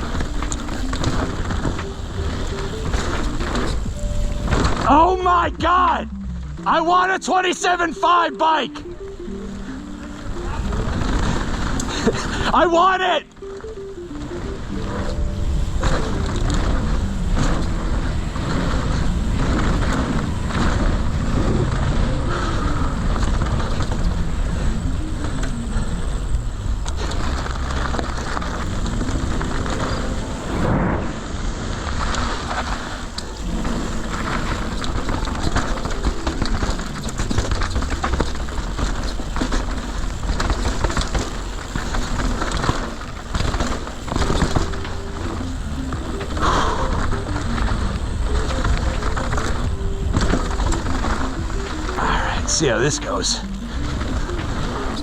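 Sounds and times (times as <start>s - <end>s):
bike rattling: 0.0s - 55.0s
tyre rumble: 0.0s - 55.0s
wind noise on microphone: 13.3s - 52.5s.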